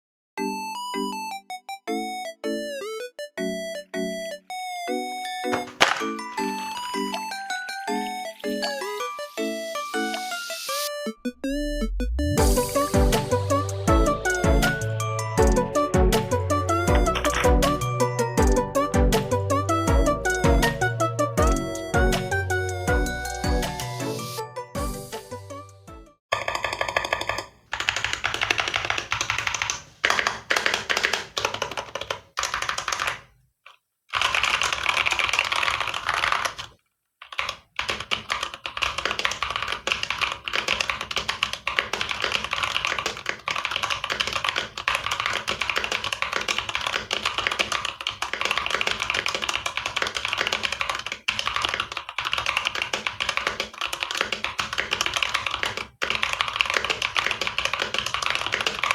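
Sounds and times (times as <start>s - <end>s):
fast mechanical keyboard typing: 5.5s - 7.3s, 16.9s - 18.6s, 26.3s - 33.3s, 34.1s - 58.9s.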